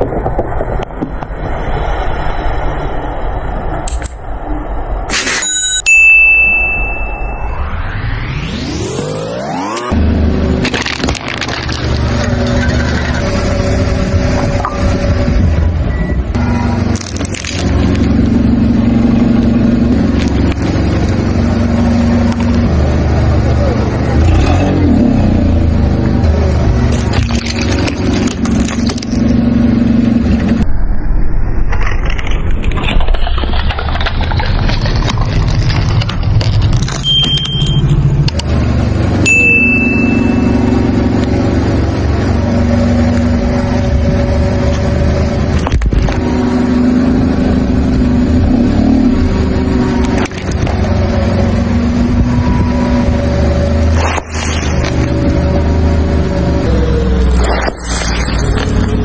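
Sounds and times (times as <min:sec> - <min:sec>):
car engine revving: 0:07.6 - 0:30.6, 0:37.6 - 0:59.0.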